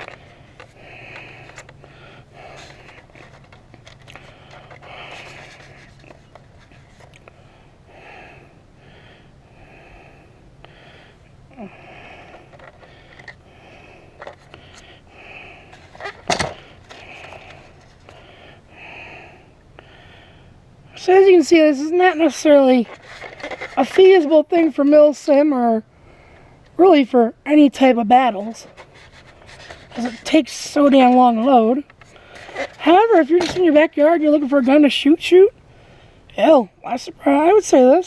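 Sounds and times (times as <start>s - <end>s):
man breathing heavily and wheezing: 0.0s - 21.0s.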